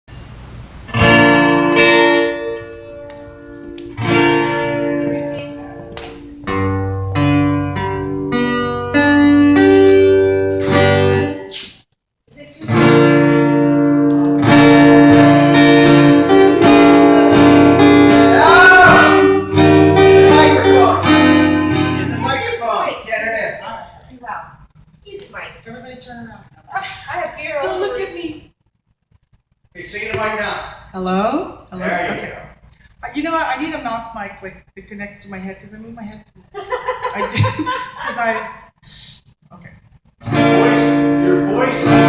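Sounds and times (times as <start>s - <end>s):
guitar chords strummed: 0.9s - 11.5s, 12.6s - 22.6s, 40.2s - 42.0s.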